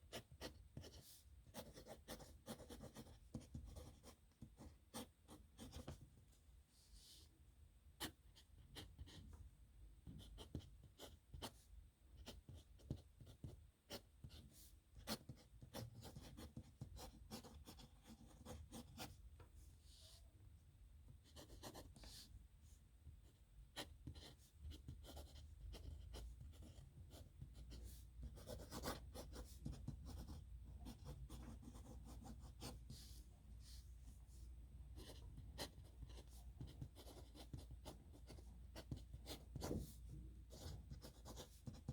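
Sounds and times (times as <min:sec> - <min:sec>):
pen scratching on paper: 0:00.1 - 0:06.0, 0:10.1 - 0:11.6, 0:12.2 - 0:19.2, 0:21.3 - 0:22.3, 0:23.8 - 0:33.8, 0:35.0 - 0:41.9.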